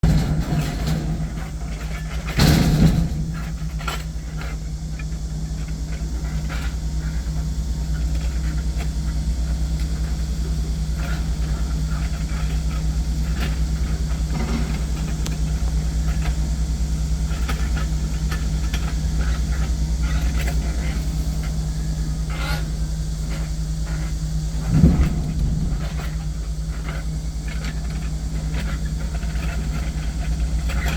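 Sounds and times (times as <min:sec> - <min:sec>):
heavy machine engine running: 0:00.0 - 0:30.9
knocks and thumps: 0:24.6 - 0:26.3.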